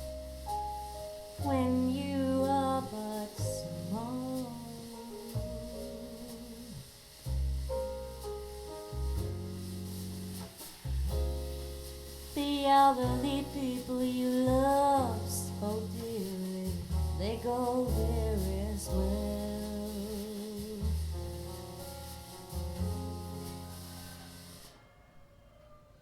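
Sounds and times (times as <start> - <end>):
bass and instrumental accompaniment: 0.0 - 24.7
singing voice with vibrato: 1.4 - 6.9.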